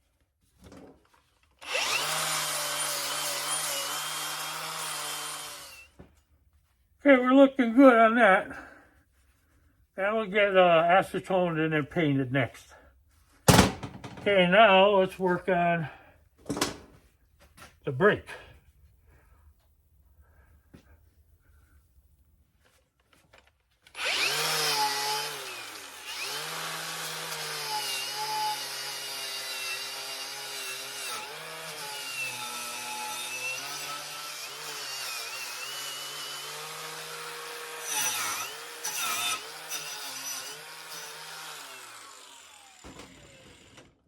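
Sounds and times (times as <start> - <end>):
electric power tool scraping: 1.6 - 6.0, 23.9 - 44.0.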